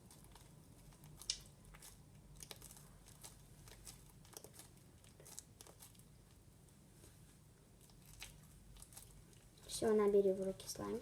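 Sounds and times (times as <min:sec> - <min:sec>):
slime crackling and clicking: 0:00.1 - 0:06.0.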